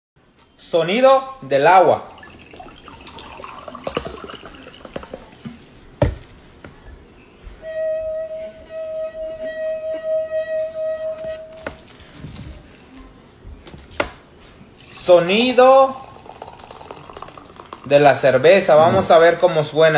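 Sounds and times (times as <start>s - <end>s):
water pouring: 1.8s - 5.6s, 14.8s - 18.2s
pulsing pitched tone: 7.6s - 11.7s.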